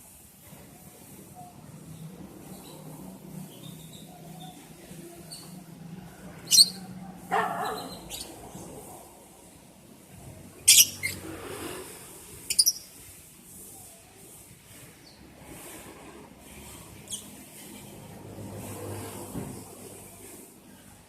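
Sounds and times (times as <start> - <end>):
lovebirds chirping shrilly: 6.4 - 8.4, 10.7 - 11.2, 12.4 - 13.0.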